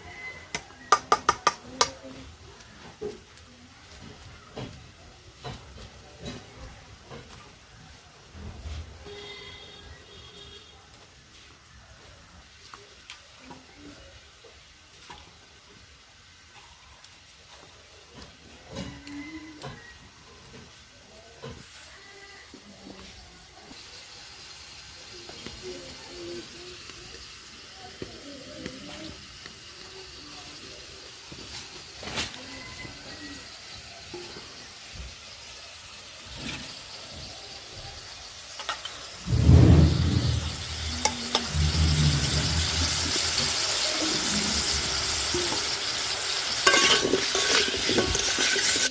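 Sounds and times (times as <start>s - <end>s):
potatoes sizzling in oil: 0.0s - 48.9s
oil clicks and crackles: 38.2s - 39.3s.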